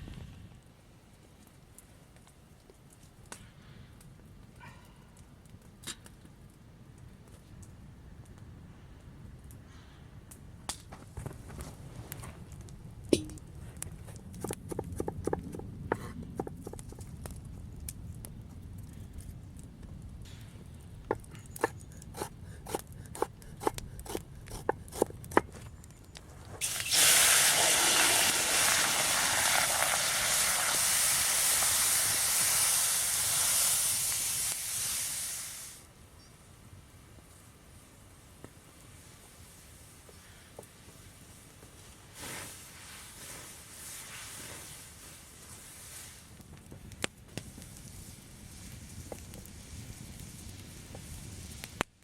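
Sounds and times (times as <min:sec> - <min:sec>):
loud steady hiss: 0:26.6 - 0:36.0.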